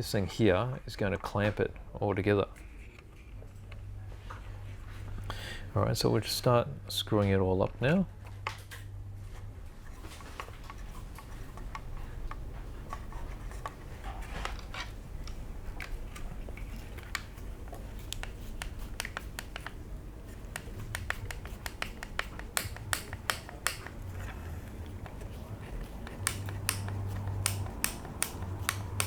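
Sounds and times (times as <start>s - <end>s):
screwdriver clicking and scratching: 14.4s - 29.0s.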